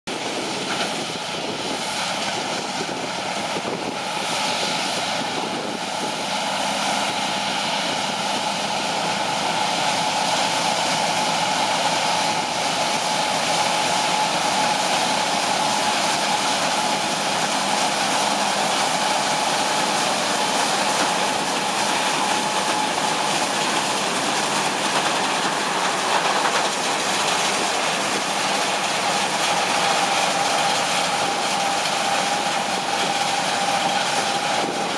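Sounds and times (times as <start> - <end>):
combine harvester drone: 0.1 - 34.9
constant mechanical whine: 0.1 - 34.9.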